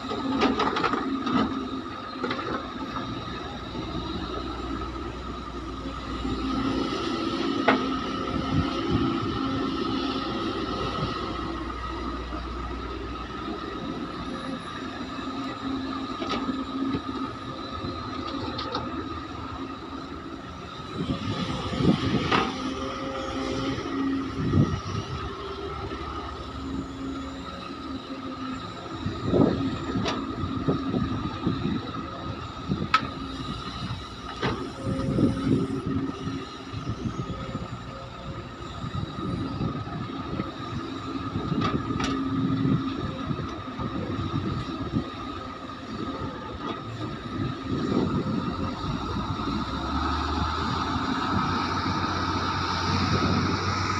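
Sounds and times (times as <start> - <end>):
diesel engine running: 0.0 - 53.9
hydraulic whine: 0.0 - 53.9.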